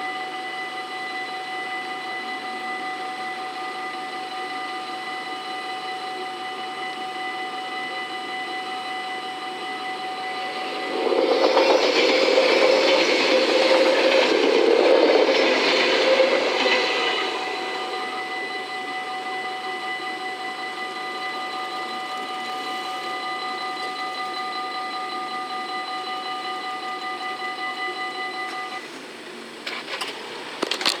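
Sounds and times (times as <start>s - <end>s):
electric train passing: 9.4s - 20.2s.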